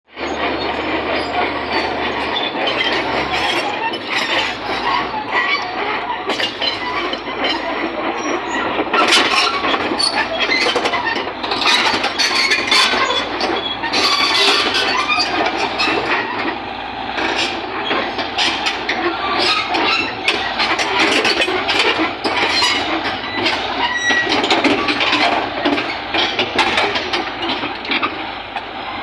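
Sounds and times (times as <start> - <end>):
crawler tracks clanking and squealing: 0.1 - 29.0.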